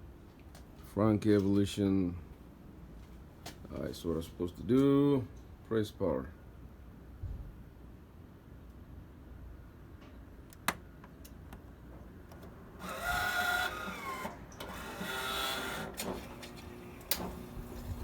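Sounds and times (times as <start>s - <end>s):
espresso machine motor running: 12.5s - 18.0s.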